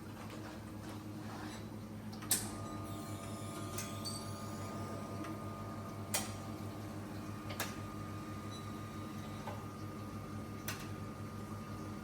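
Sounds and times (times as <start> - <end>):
espresso machine humming: 2.5 - 12.0.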